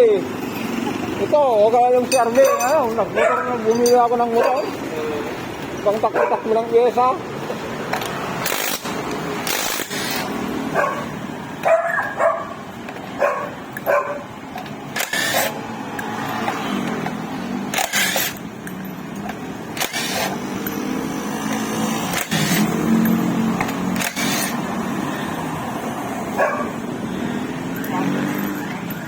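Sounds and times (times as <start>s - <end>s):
dog barking: 3.1s - 3.7s, 4.3s - 4.8s, 6.1s - 6.6s, 10.7s - 12.6s, 13.2s - 14.3s, 26.4s - 26.8s.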